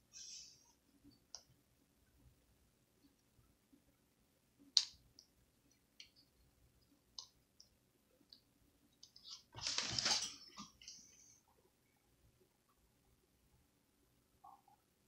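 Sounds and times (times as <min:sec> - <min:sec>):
rustling scrape: 0:09.3 - 0:10.6.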